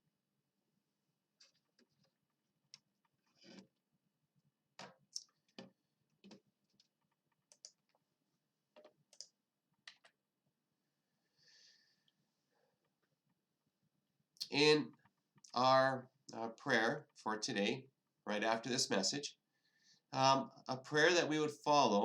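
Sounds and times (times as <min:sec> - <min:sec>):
faint clicks and taps: 0:04.8 - 0:08.1, 0:08.7 - 0:10.2.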